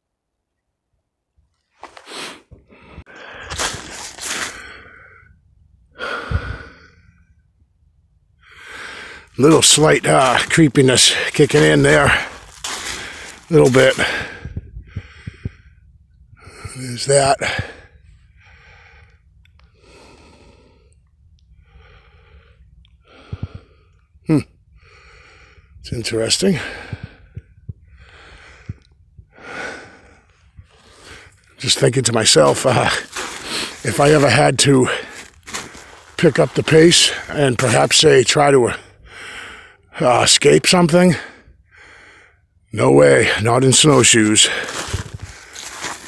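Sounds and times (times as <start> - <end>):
person breathing hard: 2.0 - 7.3, 8.4 - 9.4, 12.0 - 16.8, 17.4 - 24.1, 24.8 - 25.8, 26.6 - 31.5, 32.9 - 33.9, 34.8 - 37.3, 38.8 - 39.9, 41.2 - 42.5, 44.4 - 46.0
snowshoe steps crunching snow: 3.4 - 4.7, 9.6 - 14.4, 31.8 - 37.8, 43.7 - 46.0.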